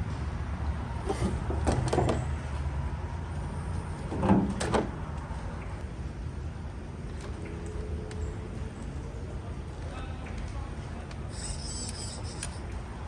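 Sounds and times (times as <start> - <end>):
steering servo whirs and clicks: 1.0 - 1.9, 11.1 - 12.8.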